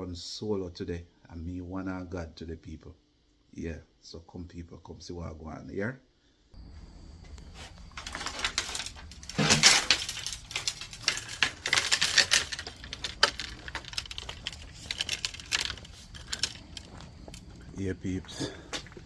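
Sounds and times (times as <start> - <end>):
clatter and thud: 7.9 - 16.6
gear clinking and rattling: 7.9 - 19.0.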